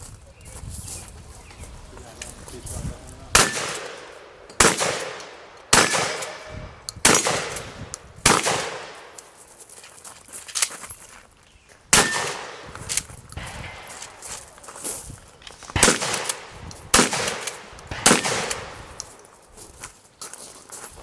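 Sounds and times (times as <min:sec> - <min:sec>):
loud gunshots: 0:03.3 - 0:09.1, 0:11.9 - 0:12.6, 0:15.8 - 0:19.0
faint gunshot cracks: 0:03.4 - 0:09.0, 0:15.8 - 0:18.8.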